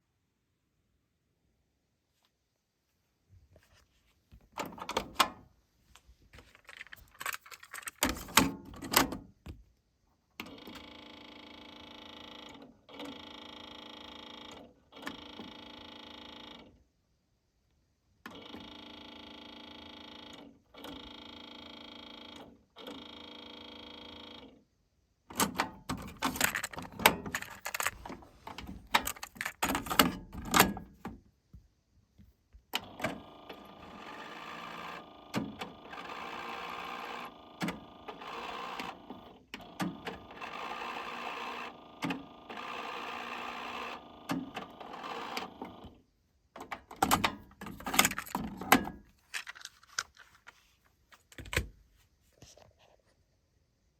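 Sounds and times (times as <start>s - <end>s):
mechanism clicks and clunks: 6.5s - 9.3s, 25.3s - 31.1s, 46.6s - 50.5s
cassette deck motor whir: 32.8s - 46.0s.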